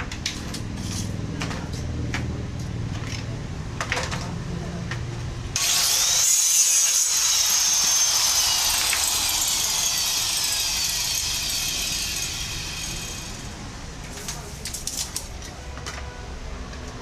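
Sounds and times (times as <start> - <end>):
electric power tool whining: 5.6 - 13.6.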